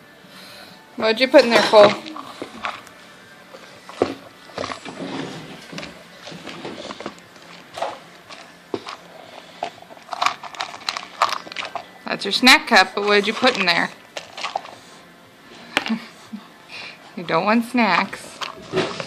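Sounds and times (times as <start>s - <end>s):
balls rattling in cup: 3.8s - 11.9s, 12.7s - 14.9s.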